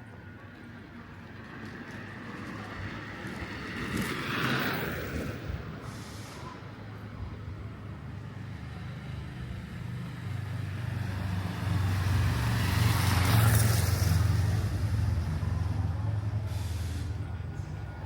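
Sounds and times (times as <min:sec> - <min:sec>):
vehicle passing by: 0:07.9 - 0:18.0.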